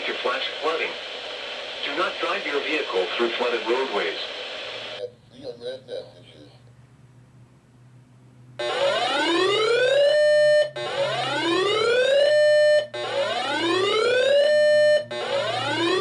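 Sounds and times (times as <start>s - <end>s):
electronic whooping alarm tone: 8.6s - 16.0s.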